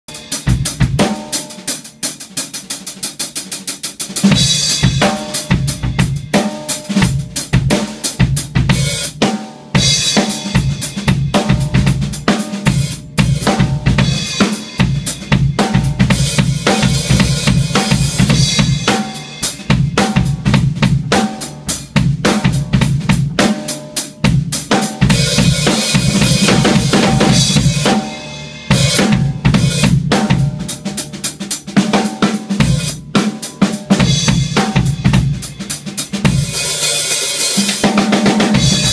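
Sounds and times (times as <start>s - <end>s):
drum kit played solo: 0.1s - 38.9s.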